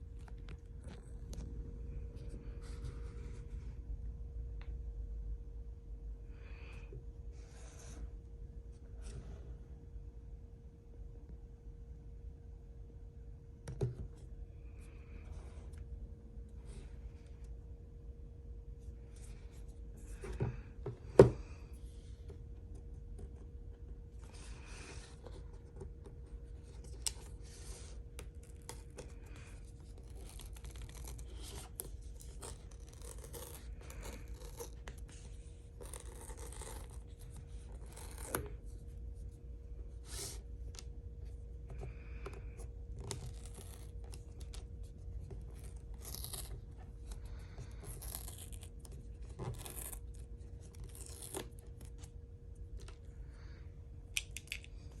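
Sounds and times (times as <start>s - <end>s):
faint steady hum: 0.0s - 55.0s
packaging tearing and rustling: 28.3s - 35.1s, 47.6s - 52.0s.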